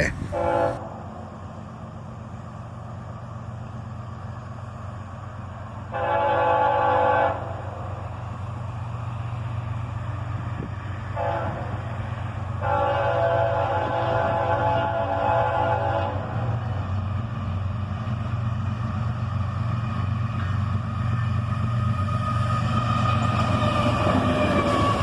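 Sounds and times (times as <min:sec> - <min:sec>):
diesel locomotive engine rumble: 0:00.0 - 0:25.0
train air horn blasts: 0:00.3 - 0:00.8, 0:05.9 - 0:07.6, 0:11.1 - 0:11.9, 0:12.6 - 0:16.6.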